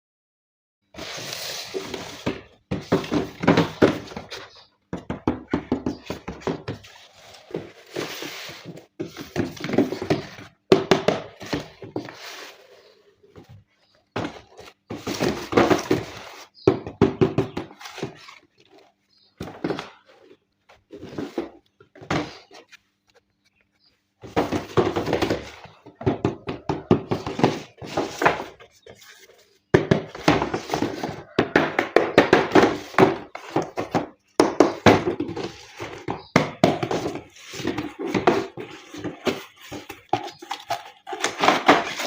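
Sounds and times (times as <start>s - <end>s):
packaging rustling and scraping: 1.0s - 4.7s, 6.0s - 10.6s, 11.2s - 16.7s, 17.7s - 23.4s, 34.7s - 42.0s.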